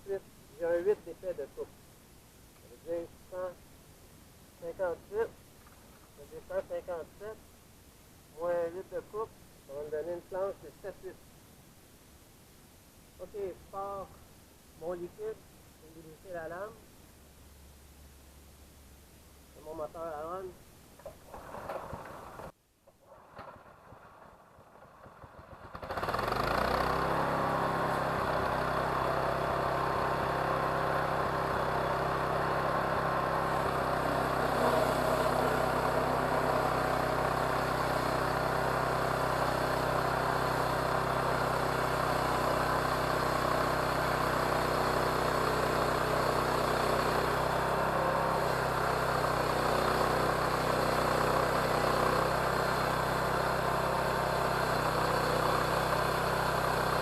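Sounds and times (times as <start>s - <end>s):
sawmill engine running: 25.0s - 57.0s.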